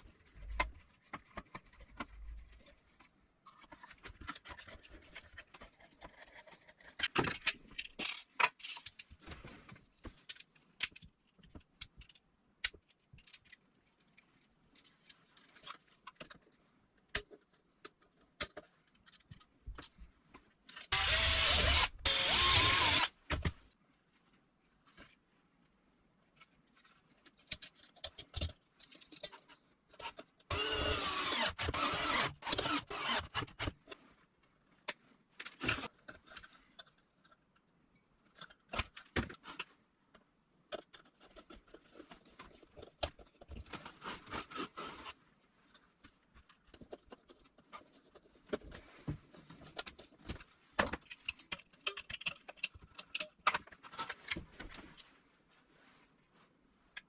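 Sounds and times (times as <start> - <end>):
whirring mechanism: 20.9 - 23.1, 30.5 - 33.7.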